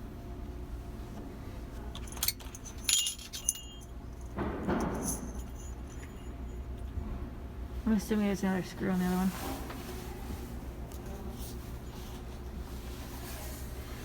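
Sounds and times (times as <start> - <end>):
metallic clinks and jingles: 1.9 - 6.9
rustling scrape: 9.0 - 10.4, 11.2 - 14.0.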